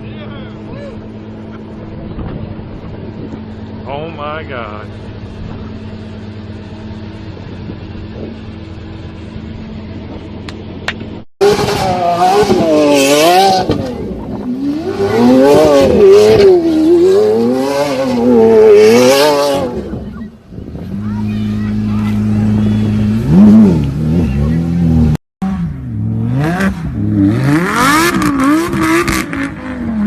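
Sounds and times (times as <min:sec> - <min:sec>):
car engine idling: 0:00.0 - 0:11.2, 0:19.6 - 0:25.1
car engine revving hard: 0:11.4 - 0:20.1, 0:21.0 - 0:30.0.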